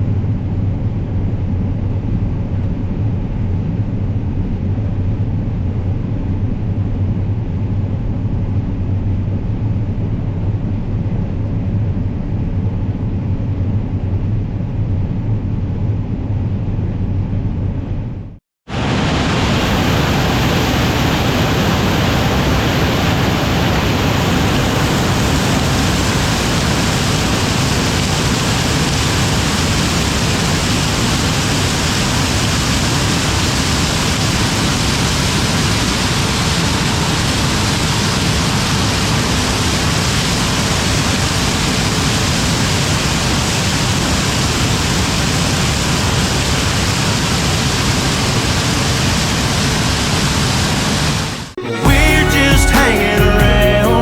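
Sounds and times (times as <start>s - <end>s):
steady roar of noise: 18.7s - 51.6s.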